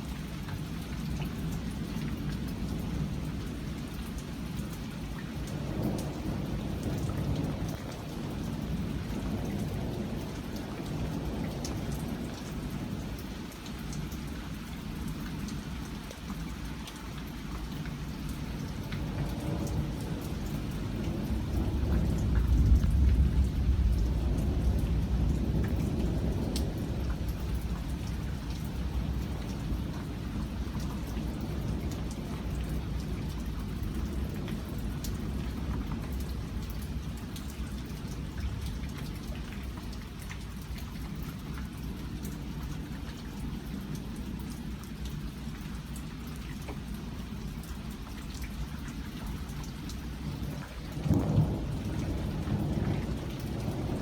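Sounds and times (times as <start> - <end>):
rain pattering on surfaces: 0.0 - 54.0
rolling thunder: 19.0 - 38.9, 50.2 - 54.0.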